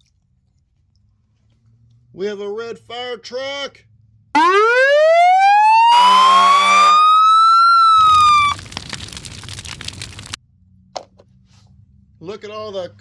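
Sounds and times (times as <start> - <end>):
toy siren wailing: 4.4 - 8.6
noisy crackle: 7.5 - 10.4.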